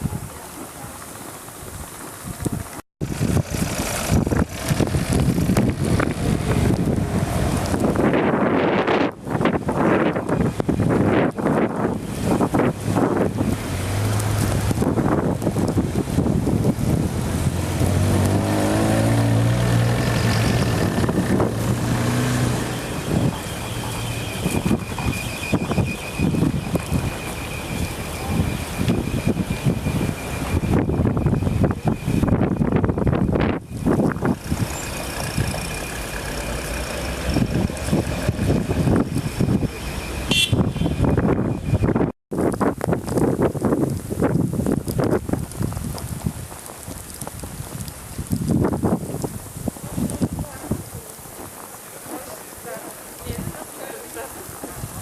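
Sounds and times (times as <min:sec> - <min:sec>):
wind buffeting microphone: 0:00.0 - 0:35.9, 0:37.0 - 0:55.0
vehicle engine hum: 0:01.0 - 0:11.0, 0:11.6 - 0:42.1
vehicle engine passing by: 0:13.5 - 0:15.0, 0:17.0 - 0:25.1, 0:34.2 - 0:40.2.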